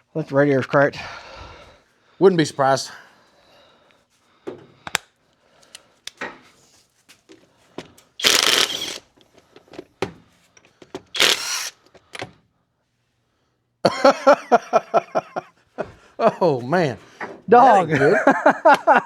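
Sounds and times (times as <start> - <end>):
tools clicking and clattering: 7.8 - 12.4
loud rattling bursts: 8.2 - 9.1, 11.2 - 11.8.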